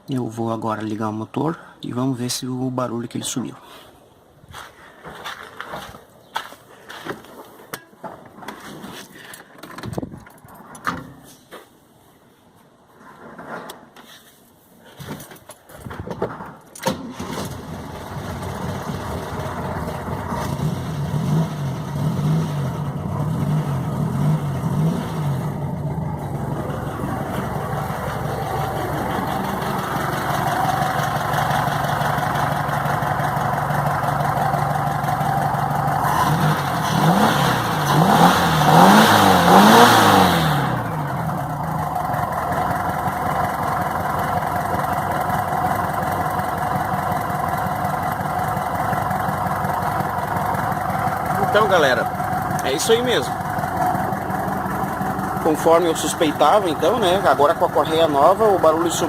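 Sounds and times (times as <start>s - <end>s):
car engine starting and idling: 16.6s - 59.0s.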